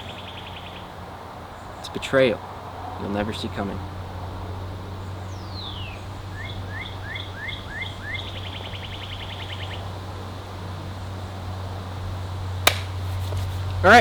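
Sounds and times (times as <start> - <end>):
songbird singing: 0.0 - 14.0
sharp click: 12.7 - 12.9.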